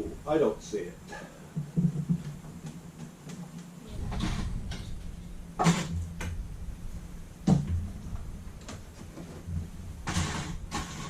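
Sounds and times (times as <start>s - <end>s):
sharp knocks: 1.5s - 3.1s
low rumbling: 3.8s - 11.0s.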